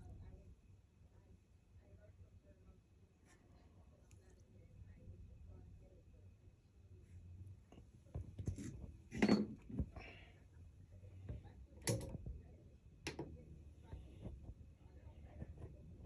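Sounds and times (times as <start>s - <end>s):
objects set down on work surface: 8.4s - 10.0s.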